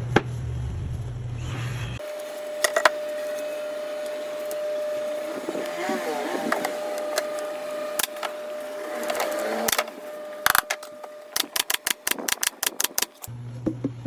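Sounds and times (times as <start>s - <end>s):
steady low hum: 0.4s - 13.6s
sharp clicks: 10.4s - 13.3s.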